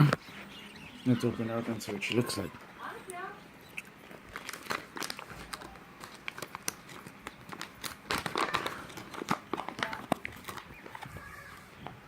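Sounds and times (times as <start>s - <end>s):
plastic pouch crinkling: 4.1s - 11.3s.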